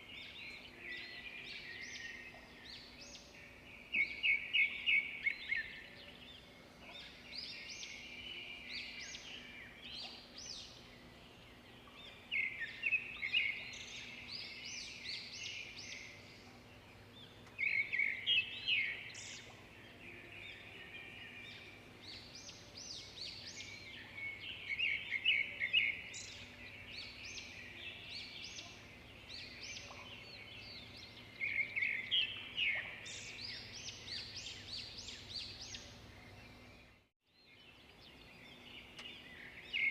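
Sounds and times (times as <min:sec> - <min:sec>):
faint steady hum: 0:00.0 - 0:37.0.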